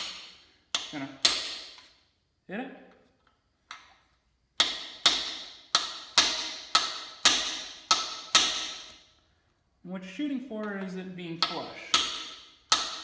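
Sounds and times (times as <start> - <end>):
hammer striking metal socket: 4.6 - 9.0, 11.4 - 13.0.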